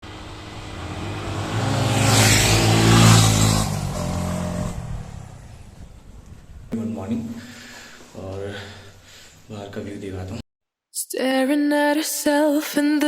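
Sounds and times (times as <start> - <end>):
motor vehicle engine: 0.0 - 6.8.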